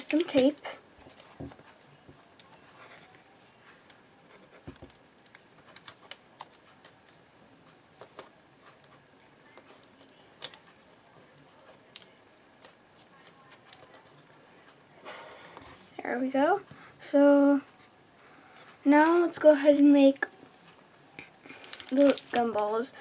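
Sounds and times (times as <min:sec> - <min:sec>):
sticky tape clicks and crinkles: 0:00.0 - 0:01.3, 0:04.8 - 0:07.2, 0:09.5 - 0:14.1, 0:21.2 - 0:22.7.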